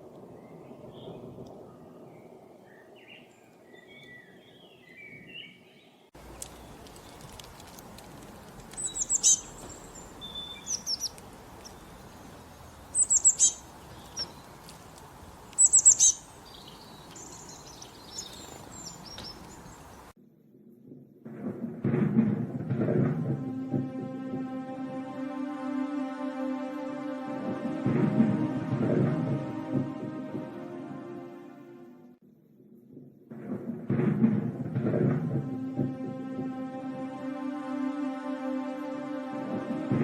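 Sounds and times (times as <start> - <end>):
birds singing: 8.7 - 20.1.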